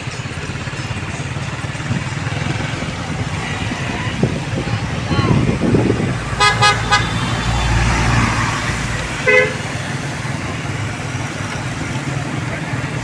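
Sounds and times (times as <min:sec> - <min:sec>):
traffic engine and road noise: 0:00.0 - 0:13.0
vehicle passing rumble: 0:00.0 - 0:13.0
vehicle horn tooting: 0:06.4 - 0:07.7, 0:09.2 - 0:09.7.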